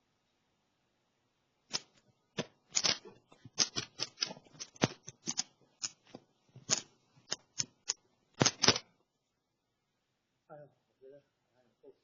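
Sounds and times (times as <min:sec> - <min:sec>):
sharp clicks and taps: 0:01.7 - 0:08.8.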